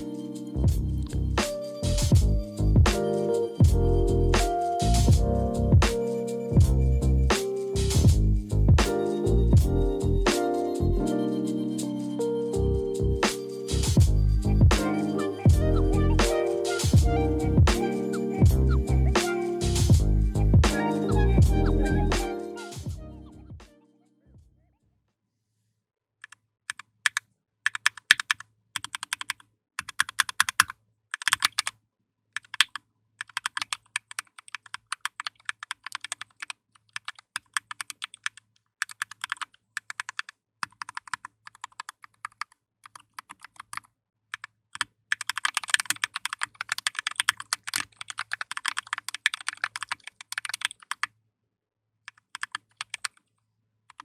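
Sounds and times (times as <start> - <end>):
mechanical keyboard typing: 26.2 - 31.8, 32.4 - 51.1, 52.1 - 53.3.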